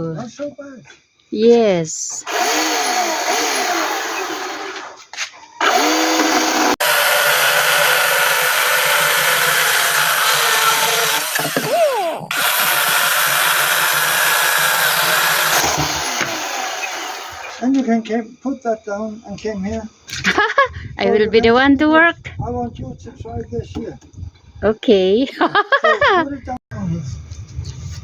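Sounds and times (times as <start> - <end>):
chainsaw cutting wood: 2.2 - 17.6.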